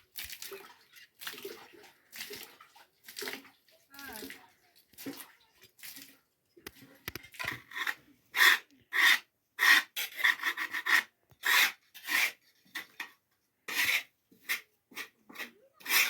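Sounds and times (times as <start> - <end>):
rasping scrapes: 7.4 - 13.1, 13.7 - 16.0.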